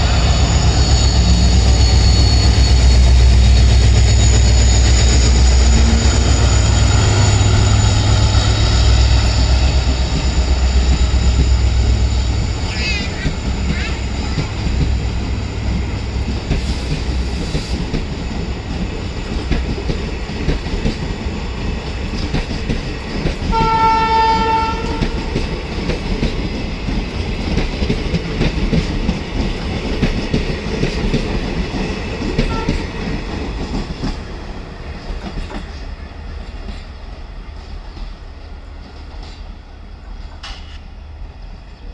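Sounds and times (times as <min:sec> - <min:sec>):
diesel locomotive engine hum: 0:00.0 - 0:41.9
train horn: 0:23.5 - 0:25.4, 0:32.4 - 0:33.0.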